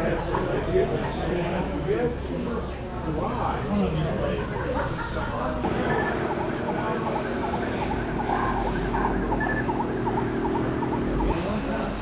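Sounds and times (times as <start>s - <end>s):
steady humming tone: 0.0s - 12.0s
electronic siren yelping: 6.7s - 11.3s.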